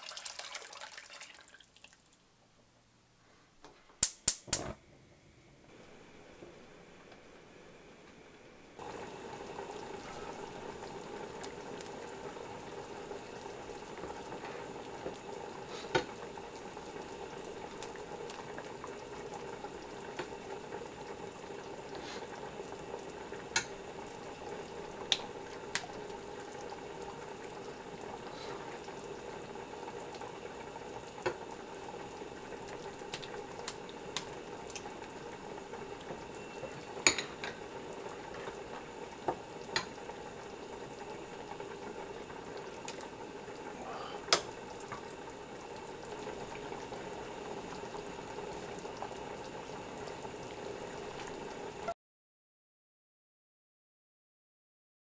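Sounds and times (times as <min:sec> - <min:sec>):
food bubbling and sizzling in pot: 0:00.0 - 0:02.4, 0:05.7 - 0:52.0.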